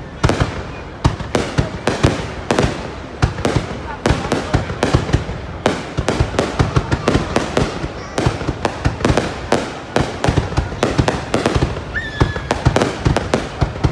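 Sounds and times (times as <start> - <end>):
fireworks bangs and crackles: 0.0 - 13.9.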